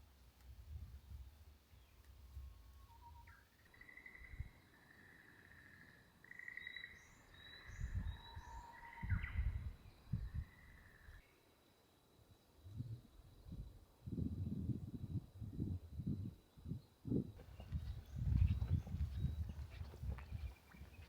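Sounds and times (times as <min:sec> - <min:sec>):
low thuds and rumbles: 0:17.4 - 0:21.0.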